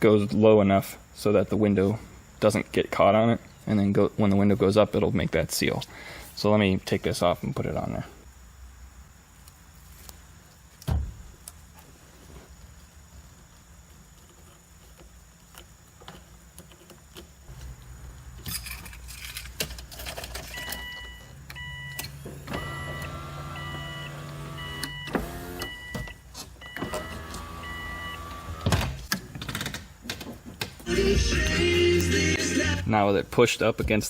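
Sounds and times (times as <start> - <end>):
handling clicks and rustles: 13.6 - 22.1
car warning chime beeping: 20.5 - 28.5
power window motor whining: 21.2 - 29.0.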